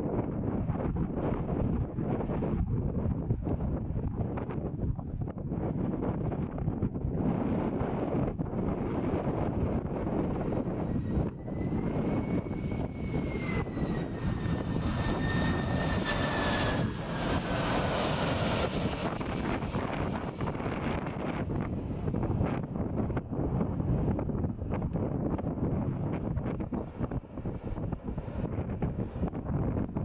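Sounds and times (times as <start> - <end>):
airplane engine roar: 0.1 - 30.0
jet engine whine: 7.2 - 30.0.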